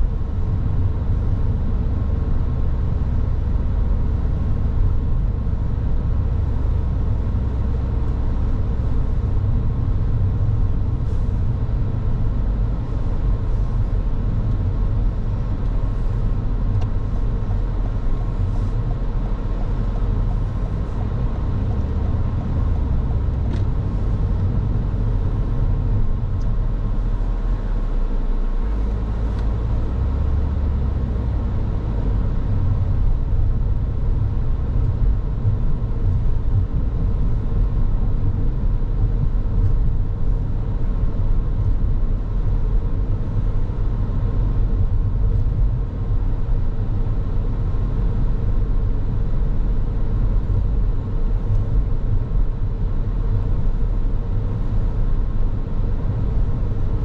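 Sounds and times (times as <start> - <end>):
car tyres and engine rumble: 0.0 - 57.0.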